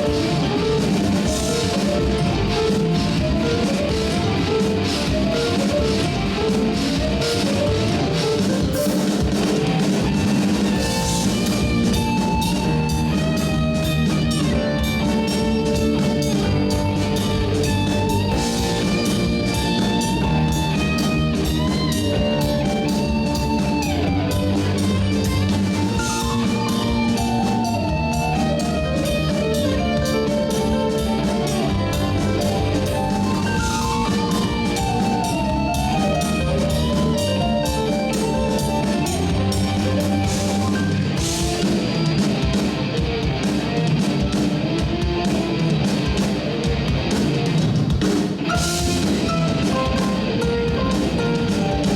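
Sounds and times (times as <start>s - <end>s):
drum kit with cymbals: 0.0s - 51.9s
electric guitars: 0.0s - 51.9s.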